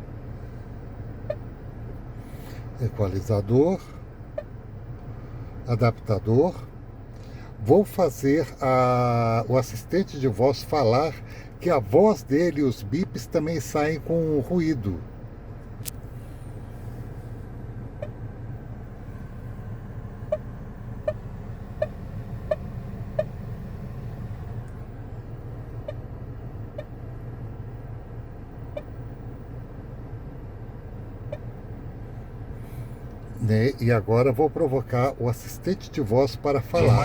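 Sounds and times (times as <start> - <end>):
short beeps from car stereo: 0.0 - 1.7, 3.8 - 5.4, 17.8 - 23.7, 25.7 - 27.1, 28.6 - 29.3, 31.1 - 31.8
steady low hum: 0.0 - 37.0.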